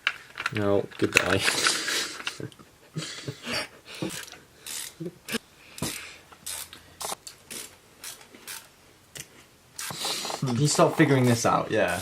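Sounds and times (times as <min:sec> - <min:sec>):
hand tools clinking: 0:00.0 - 0:02.5.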